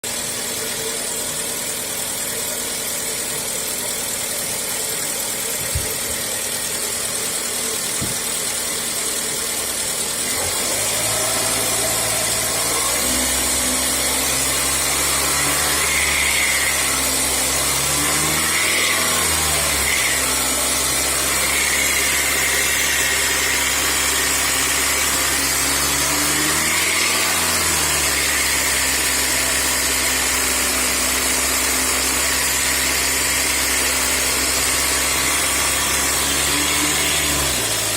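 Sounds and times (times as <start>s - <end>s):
engine knock: 0.2s - 10.3s
car engine revving: 5.9s - 37.9s.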